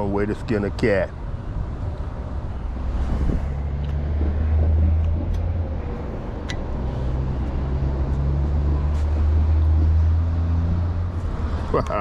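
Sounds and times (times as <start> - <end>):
engine idling: 2.0 - 12.0.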